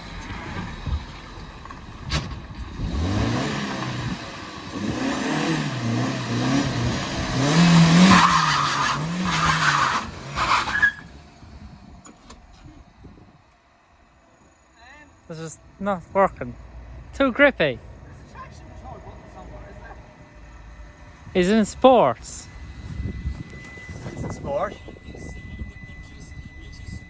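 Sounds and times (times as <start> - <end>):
car engine revving: 0.0 - 26.2
tyres squealing: 4.8 - 12.9.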